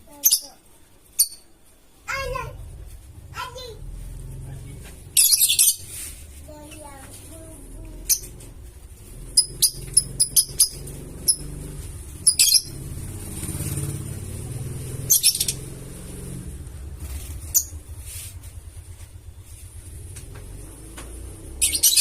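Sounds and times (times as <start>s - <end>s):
bird chirping: 0.1s - 1.6s, 5.0s - 6.0s, 9.2s - 14.0s, 14.8s - 15.9s, 21.5s - 22.0s
steady low rumble: 2.1s - 21.9s.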